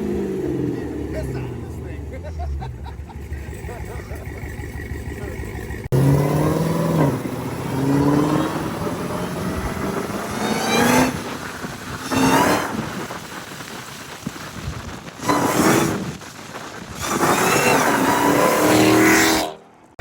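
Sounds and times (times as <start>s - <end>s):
car engine accelerating hard: 0.0s - 12.7s, 17.0s - 19.5s.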